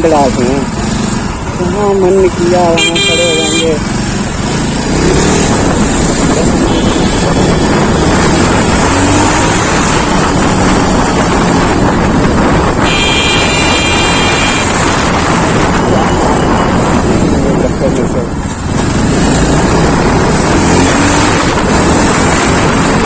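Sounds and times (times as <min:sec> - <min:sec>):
motorcycle engine running: 0:00.0 - 0:23.0
traffic: 0:00.0 - 0:23.0
steady horn tone: 0:02.7 - 0:03.8, 0:06.5 - 0:07.9, 0:12.8 - 0:15.7
wind buffeting microphone: 0:04.3 - 0:23.0.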